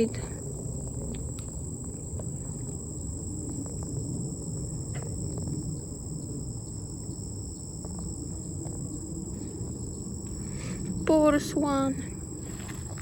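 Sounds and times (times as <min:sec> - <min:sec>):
low rumble: 0:00.0 - 0:11.4
insects buzzing: 0:00.0 - 0:13.0.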